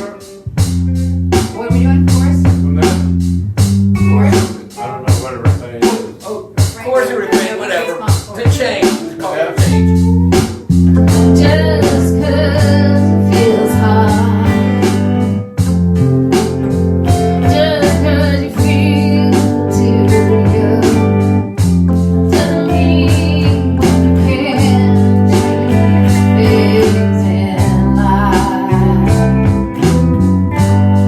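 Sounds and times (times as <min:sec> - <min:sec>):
bass guitar: 0:00.0 - 0:05.5, 0:08.5 - 0:31.0
guitar: 0:00.0 - 0:31.0
steady drum beat: 0:00.0 - 0:31.0
person singing: 0:09.1 - 0:15.4, 0:17.1 - 0:21.5, 0:22.1 - 0:30.1.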